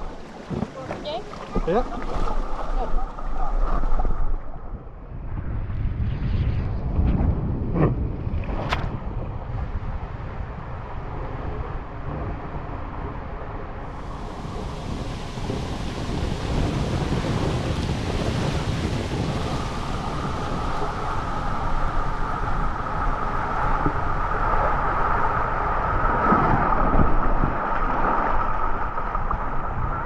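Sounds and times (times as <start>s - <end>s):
rushing water: 0.0s - 4.5s, 13.8s - 30.0s
tube sliding down waterslide: 0.0s - 30.0s
wind on microphone: 0.0s - 30.0s.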